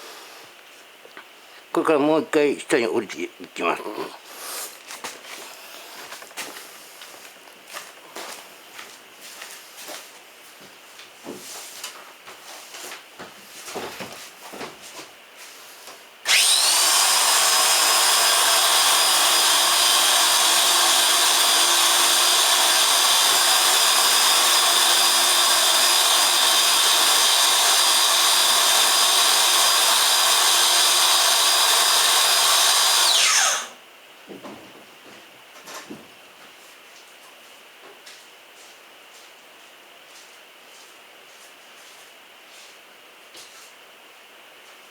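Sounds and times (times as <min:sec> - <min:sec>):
electric winch motor whining: 0:16.3 - 0:33.8.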